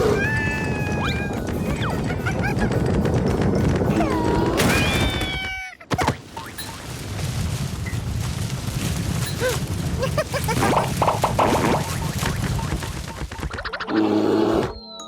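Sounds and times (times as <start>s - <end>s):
small squeaks: 2.8s - 14.0s.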